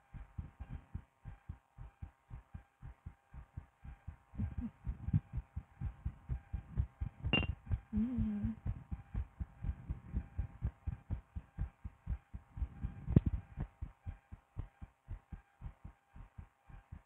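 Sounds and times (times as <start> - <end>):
faint steady hum: 0.0 - 17.0
heartbeat thumps through stethoscope: 0.0 - 17.0
wavering low tone: 7.3 - 8.6.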